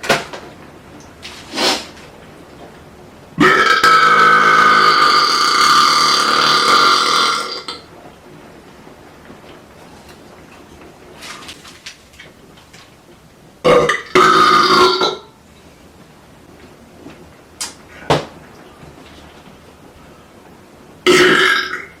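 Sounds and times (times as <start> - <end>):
man burping loudly: 3.4 - 7.8, 13.6 - 15.3, 21.1 - 22.0.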